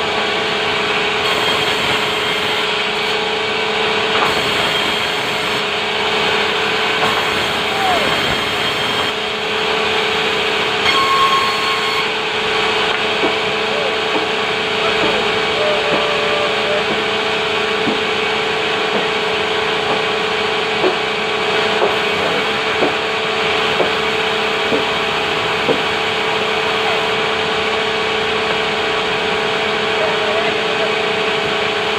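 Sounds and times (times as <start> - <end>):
saw cutting timber: 0.0 - 31.9
short squeaks or knocks: 10.8 - 12.2.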